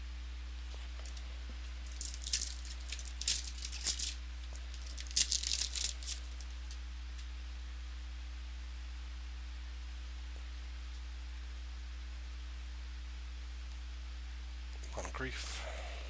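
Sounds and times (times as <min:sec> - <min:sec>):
low electrical hum: 0:00.0 - 0:16.0
wrapper crinkling and tearing: 0:00.7 - 0:06.5.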